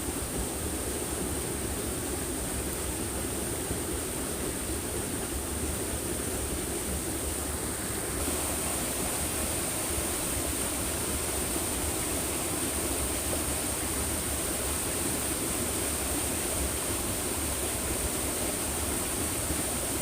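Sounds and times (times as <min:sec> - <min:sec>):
flowing stream water: 0:00.0 - 0:20.0.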